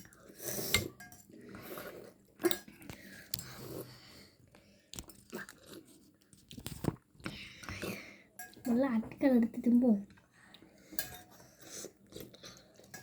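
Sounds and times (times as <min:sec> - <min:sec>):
spoons clinking on bowls: 0:00.6 - 0:01.3, 0:08.4 - 0:08.8, 0:10.9 - 0:11.4.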